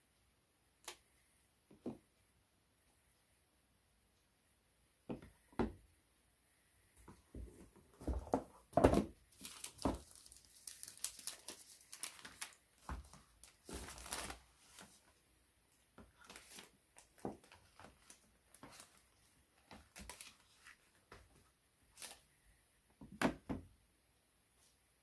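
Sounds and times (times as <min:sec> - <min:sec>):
packaging rustling and sliding: 0:09.4 - 0:15.1.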